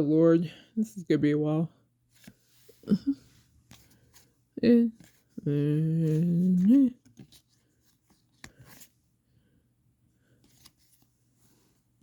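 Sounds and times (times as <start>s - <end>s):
trading cards being handled: 2.1s - 2.8s, 3.6s - 9.0s, 10.3s - 11.9s.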